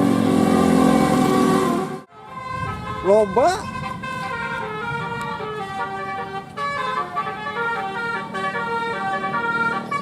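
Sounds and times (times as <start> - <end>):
multi-tone air horns playing a tune: 0.3 - 10.0.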